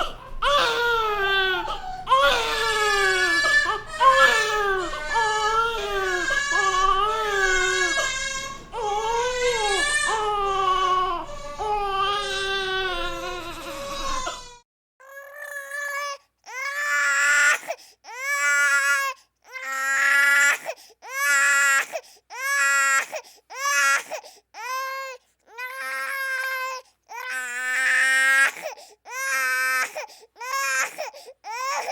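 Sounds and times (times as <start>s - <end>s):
baby breathing: 0.0s - 2.3s
low background hum: 0.0s - 14.6s
baby crying: 0.0s - 31.9s.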